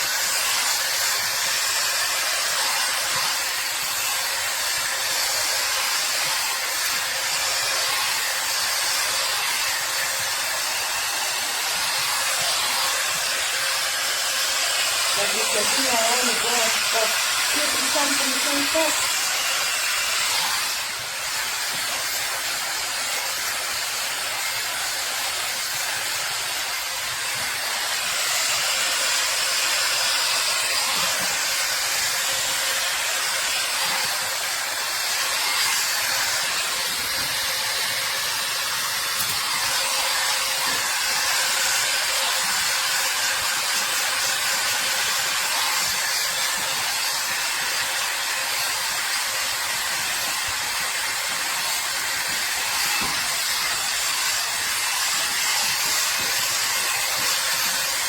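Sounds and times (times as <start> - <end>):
hot air brush blowing: 0.0 - 58.0.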